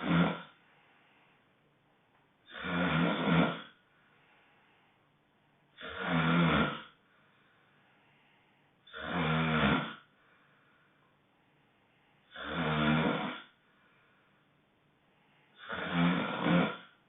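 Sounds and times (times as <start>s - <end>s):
loud honking snores: 0.0s - 0.6s, 2.5s - 3.8s, 5.8s - 7.0s, 8.8s - 10.1s, 12.3s - 13.6s, 15.6s - 17.0s.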